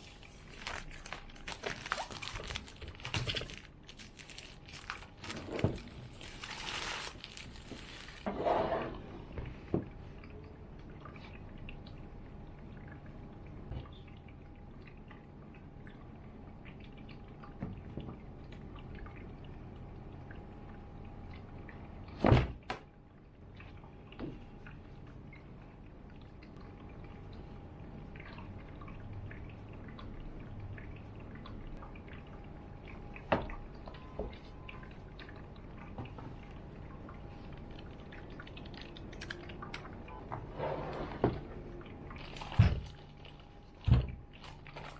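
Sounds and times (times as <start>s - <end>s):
faint steady hum: 0.0s - 44.9s
packaging knocks and clicks: 0.6s - 7.9s.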